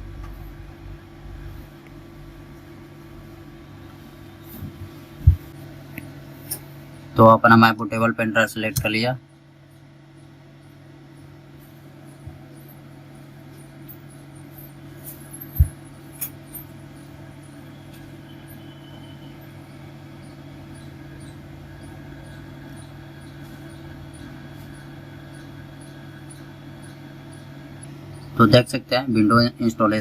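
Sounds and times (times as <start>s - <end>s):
computer fans humming: 0.0s - 30.0s.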